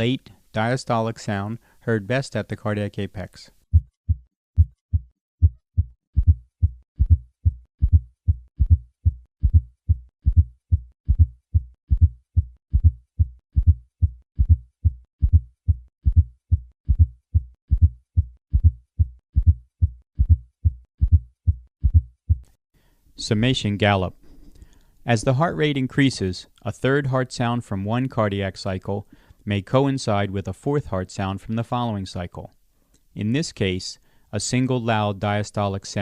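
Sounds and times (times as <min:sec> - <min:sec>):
heartbeat low thuds: 0:03.7 - 0:22.6.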